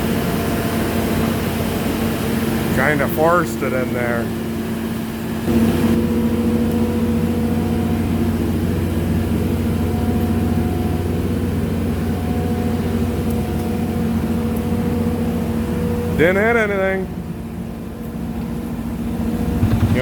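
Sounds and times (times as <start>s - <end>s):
loader engine running: 0.0s - 20.0s.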